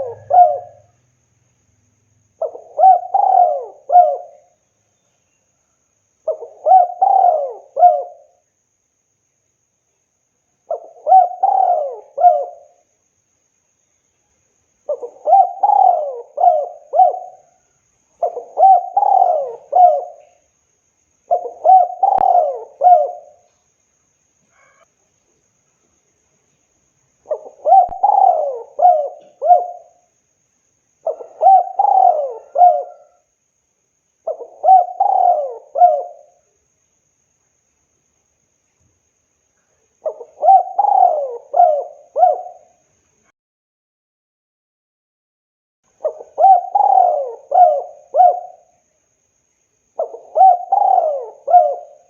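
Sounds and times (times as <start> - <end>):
dove cooing: 0.0 - 1.0, 2.4 - 4.5, 6.3 - 8.4, 10.7 - 12.8, 14.9 - 17.6, 18.2 - 20.4, 21.3 - 23.5, 27.3 - 30.0, 31.0 - 33.3, 34.2 - 36.4, 40.0 - 42.8, 46.0 - 48.7, 50.0 - 52.0.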